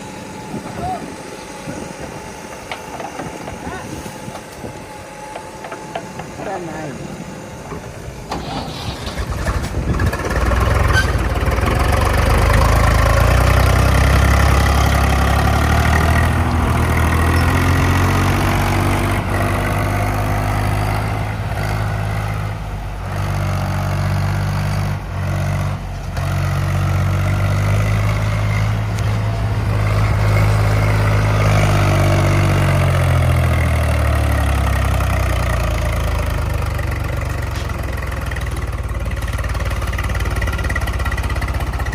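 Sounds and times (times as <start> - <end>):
heavy diesel engine running: 0.0 - 41.9.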